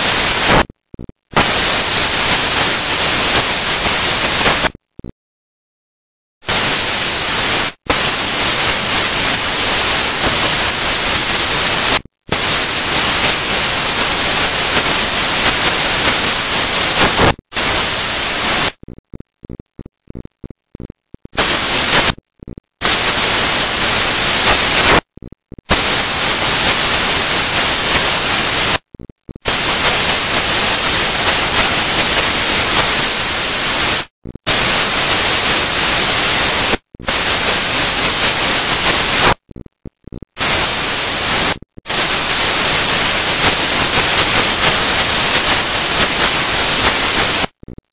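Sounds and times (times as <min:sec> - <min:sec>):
static hiss: 0:00.0 - 0:05.0, 0:06.4 - 0:47.9.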